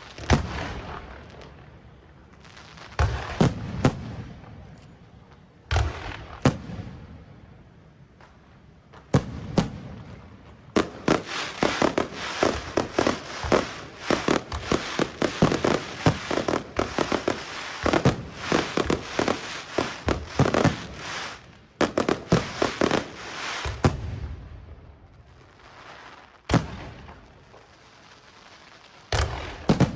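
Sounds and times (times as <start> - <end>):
fireworks bangs and crackles: 0.0 - 29.9.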